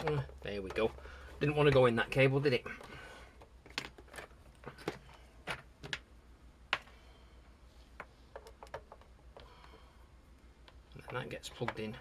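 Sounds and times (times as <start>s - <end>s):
small parts clicking and tapping: 8.0s - 9.9s.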